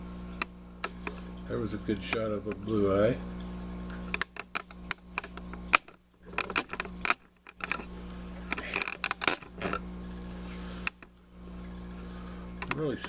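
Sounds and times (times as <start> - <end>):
steady low hum: 0.0 - 13.0
tripod head clicking and creaking: 4.2 - 7.9, 8.5 - 9.8.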